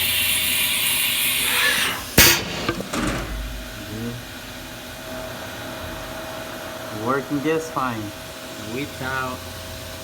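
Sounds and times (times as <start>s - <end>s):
air hissing: 0.0s - 3.8s
sharp metallic clunk: 2.1s - 3.8s.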